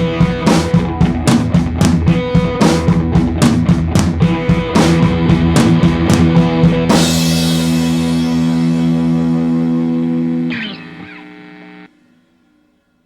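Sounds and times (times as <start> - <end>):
drum beats: 0.0 - 9.8
guitar-led instrumental music: 0.0 - 13.0.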